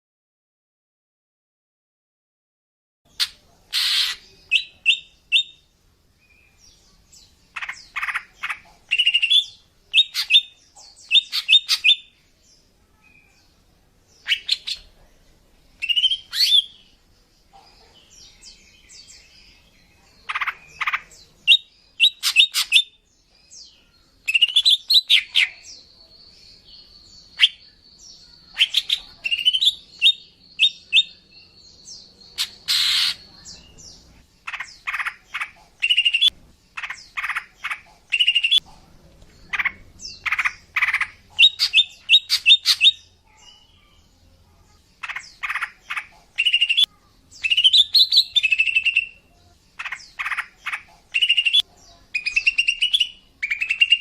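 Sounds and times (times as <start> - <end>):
bird chirping and whistling: 38.2 - 38.6, 52.2 - 54.0.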